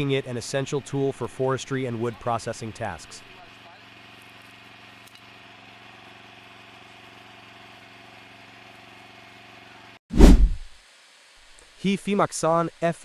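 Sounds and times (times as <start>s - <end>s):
small engine idling: 0.6s - 10.0s.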